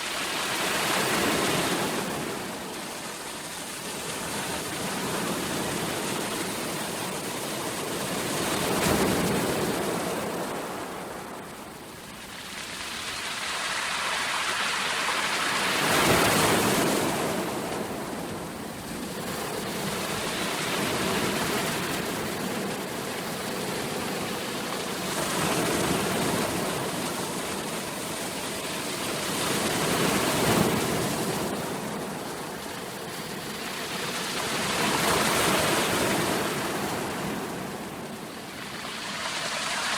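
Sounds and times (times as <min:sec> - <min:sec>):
waves breaking on shore: 0:08.3 - 0:39.9.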